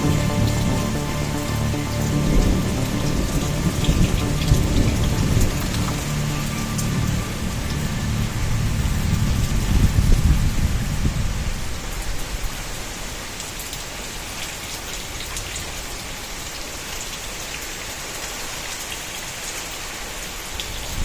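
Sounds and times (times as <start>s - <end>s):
low rumble: 0.0s - 11.9s
rain on hard surfaces: 0.0s - 21.0s.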